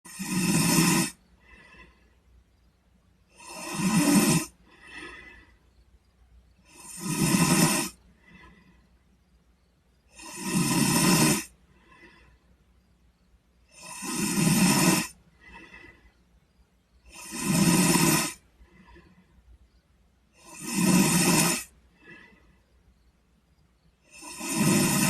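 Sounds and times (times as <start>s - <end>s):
boy snoring: 0.1s - 2.0s, 3.3s - 5.5s, 6.6s - 8.7s, 10.0s - 12.4s, 13.6s - 16.1s, 17.0s - 19.2s, 20.3s - 22.5s, 24.0s - 25.0s
faint breathing: 0.2s - 25.0s.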